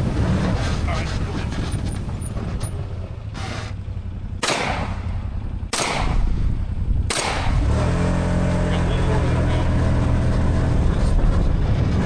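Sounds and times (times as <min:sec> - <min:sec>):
vehicle engine running: 0:00.0 - 0:12.0
shotgun shots: 0:04.4 - 0:05.1, 0:05.7 - 0:06.3, 0:07.1 - 0:07.6.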